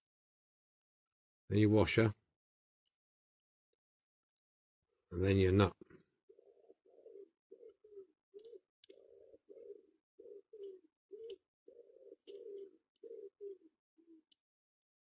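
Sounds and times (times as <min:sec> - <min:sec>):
pigeon cooing: 0:05.8 - 0:14.4.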